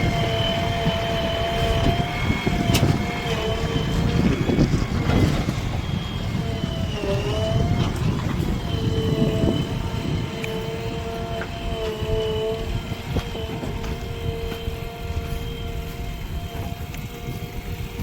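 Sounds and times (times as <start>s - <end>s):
diesel engine running under load: 0.0s - 18.0s
steady whine: 0.0s - 18.0s.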